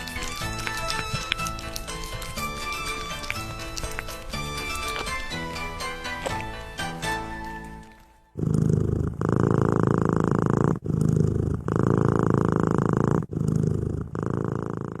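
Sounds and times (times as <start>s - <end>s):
cat purring: 0.0s - 15.0s.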